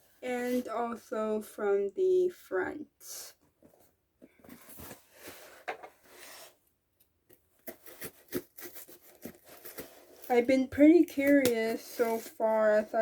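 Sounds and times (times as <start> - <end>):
book box rustling: 3.7 - 6.6, 7.6 - 13.0.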